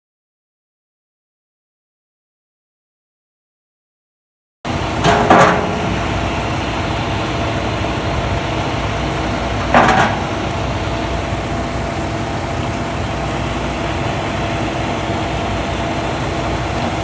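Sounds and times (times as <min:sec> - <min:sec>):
truck engine running: 0:04.7 - 0:17.0.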